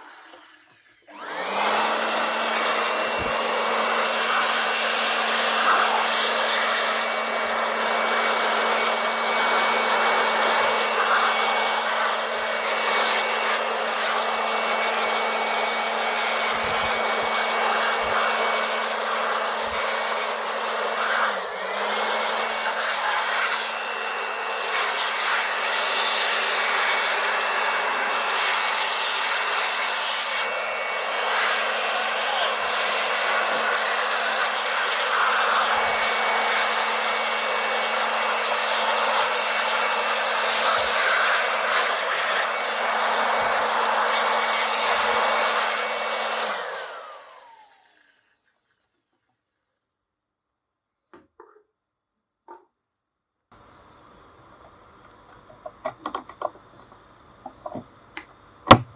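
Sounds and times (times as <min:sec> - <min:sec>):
air blower running: 0:00.0 - 0:48.4, 0:53.6 - 0:58.9.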